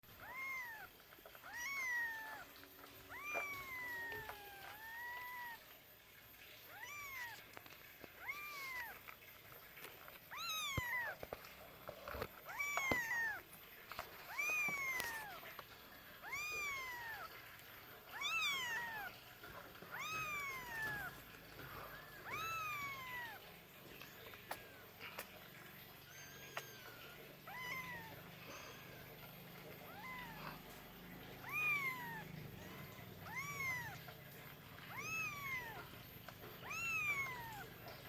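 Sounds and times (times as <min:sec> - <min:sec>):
kitten meowing: 0:00.0 - 0:05.8, 0:06.4 - 0:11.4, 0:12.2 - 0:25.2, 0:25.8 - 0:38.0.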